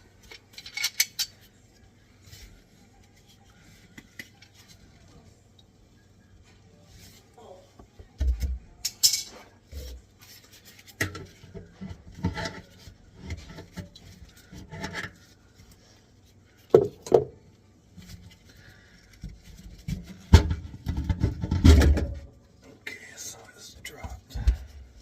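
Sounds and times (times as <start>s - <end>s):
garbage disposal knocking and scraping: 11.0s - 15.2s, 16.7s - 17.4s, 19.2s - 22.3s.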